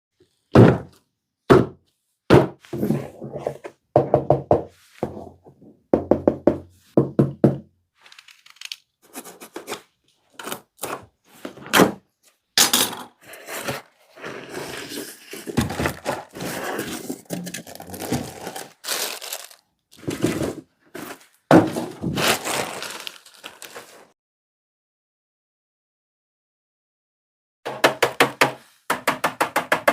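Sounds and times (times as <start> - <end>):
box thuds and knocks: 0.6 - 2.9, 15.6 - 16.3, 21.5 - 22.2
cardboard and packing rustling: 13.2 - 24.1.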